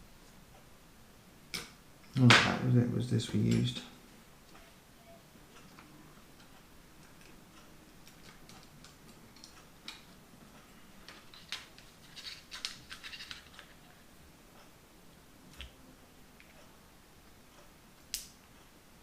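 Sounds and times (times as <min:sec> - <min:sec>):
small tools clicking on plastic: 0:08.0 - 0:10.1, 0:11.0 - 0:13.8.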